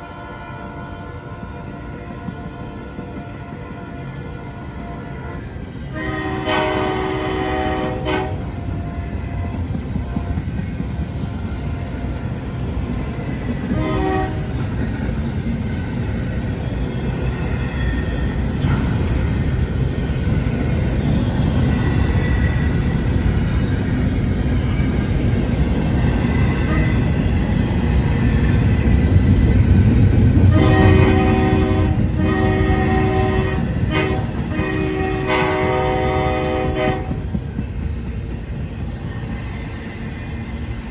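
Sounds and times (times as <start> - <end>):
train rumbling on rails: 0.0 - 40.9
locomotive horn blasts: 3.1 - 9.1, 13.7 - 14.5, 30.5 - 37.2.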